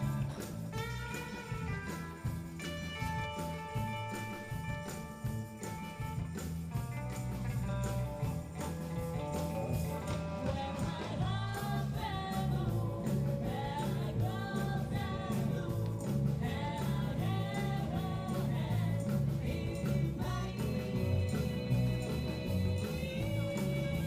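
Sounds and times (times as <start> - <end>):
bass line: 0.0 - 24.0
held guitar notes: 0.0 - 24.0
person singing: 10.3 - 24.0.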